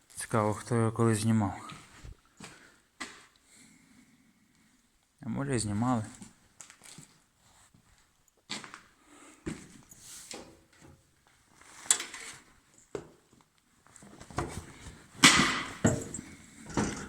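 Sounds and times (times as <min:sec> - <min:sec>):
tools being handled: 0:14.2 - 0:17.0
metallic clanks and knocks: 0:15.2 - 0:17.0.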